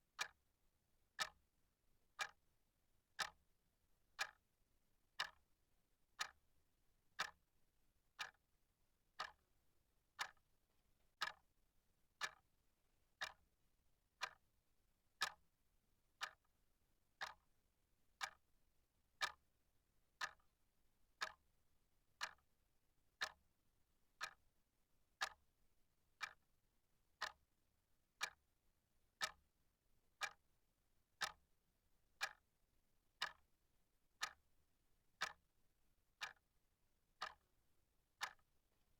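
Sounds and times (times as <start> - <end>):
clock ticking: 0.2 - 0.4, 1.2 - 1.4, 3.2 - 3.4, 4.2 - 4.4, 5.2 - 5.4, 6.2 - 6.4, 7.2 - 7.4, 9.2 - 9.4, 10.2 - 10.4, 11.2 - 11.4, 12.2 - 12.4, 13.2 - 13.4, 14.2 - 14.4, 15.2 - 15.4, 17.2 - 17.4, 18.2 - 18.4, 20.2 - 20.4, 21.2 - 21.4, 22.2 - 22.4, 23.2 - 23.4, 24.2 - 24.4, 25.2 - 25.4, 26.2 - 26.4, 27.2 - 27.4, 28.2 - 28.4, 29.2 - 29.4, 30.2 - 30.4, 31.2 - 31.4, 32.2 - 32.4, 33.2 - 33.4, 34.2 - 34.4, 35.2 - 35.4, 36.2 - 36.4, 37.2 - 37.4, 38.2 - 38.4.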